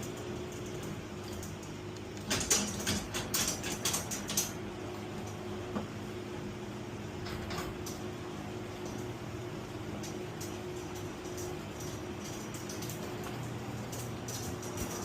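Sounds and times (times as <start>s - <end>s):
garage door opener motor hum: 0.0s - 15.0s
garage door rattling clicks: 2.1s - 4.6s.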